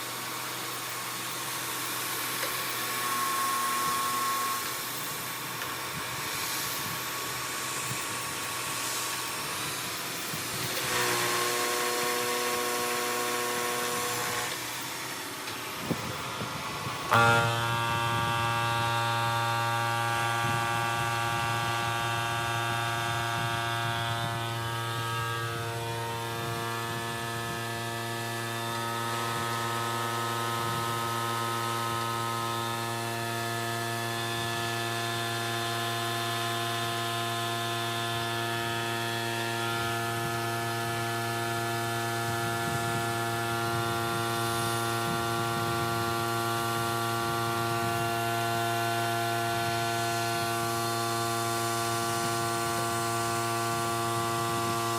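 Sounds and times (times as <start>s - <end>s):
milling machine hum: 0.0s - 54.9s.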